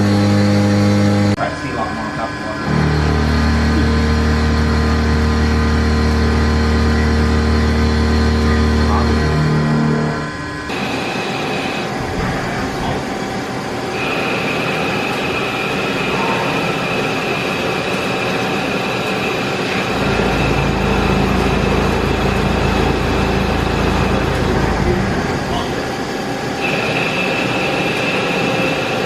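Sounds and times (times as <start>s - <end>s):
dense mechanical machinery noise: 0.0s - 29.0s
high machine whine: 0.0s - 29.0s
low rumble: 19.8s - 26.0s.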